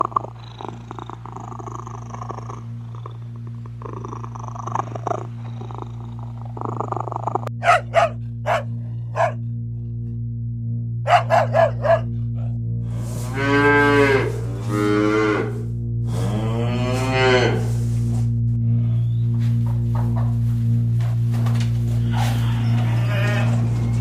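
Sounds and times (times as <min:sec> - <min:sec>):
cat purring: 0:00.0 - 0:07.5.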